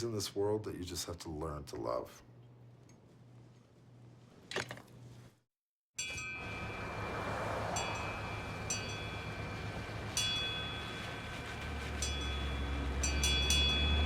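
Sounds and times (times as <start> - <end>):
chimes ringing: 6.0 - 11.0, 12.0 - 14.0.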